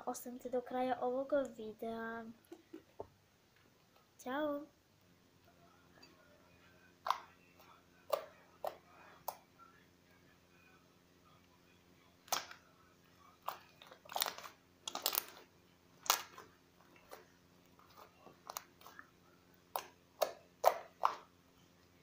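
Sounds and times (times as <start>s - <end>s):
crunchy slime crackling and popping: 12.2s - 12.6s, 13.4s - 19.0s, 19.6s - 21.3s.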